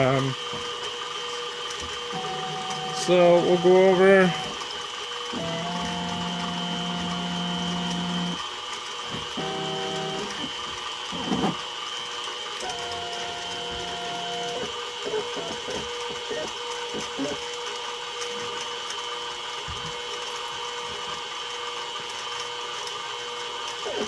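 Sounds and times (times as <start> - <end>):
mill spindle whine: 0.0 - 24.0
stepper motor whine: 2.1 - 8.5, 9.1 - 11.6, 12.6 - 17.4.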